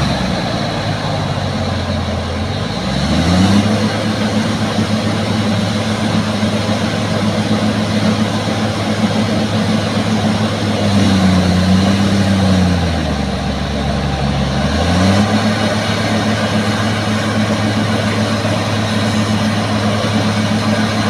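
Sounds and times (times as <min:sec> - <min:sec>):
bulldozer diesel engine revving: 0:00.0 - 0:21.0.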